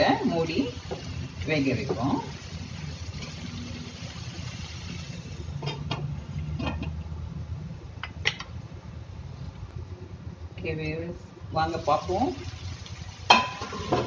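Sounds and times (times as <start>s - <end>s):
pan and lid clinking: 13.3s - 14.0s.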